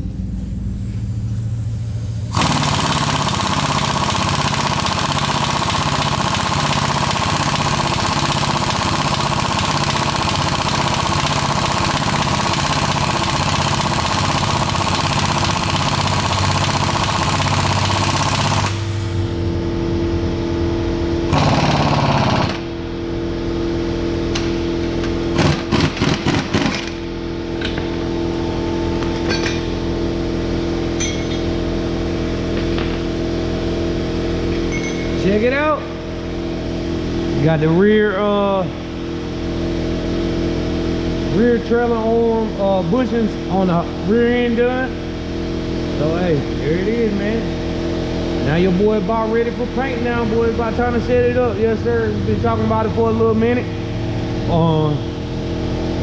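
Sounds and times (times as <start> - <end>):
low steady hum: 0.0 - 2.4, 18.7 - 21.4
impact tool hammering rapidly: 2.3 - 18.8, 21.3 - 22.7, 25.3 - 27.0
short bursts of rattling: 2.3 - 18.8.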